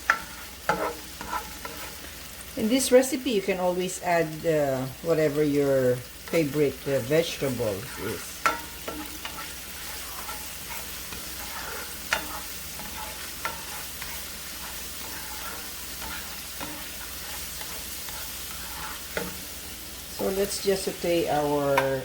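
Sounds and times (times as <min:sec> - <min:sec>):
utensil knocking and scraping pan: 0:00.0 - 0:02.0, 0:08.4 - 0:19.5
food sizzling in oil: 0:00.0 - 0:22.0.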